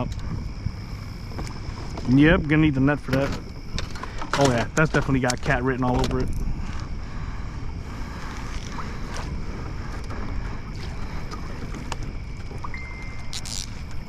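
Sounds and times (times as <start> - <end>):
wind on microphone: 0.0 - 4.0, 6.0 - 14.0
water sounds: 5.8 - 14.0.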